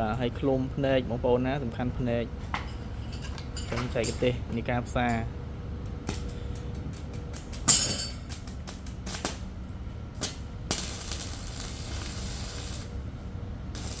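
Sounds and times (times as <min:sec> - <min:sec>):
welding arc hissing: 0:10.2 - 0:14.0.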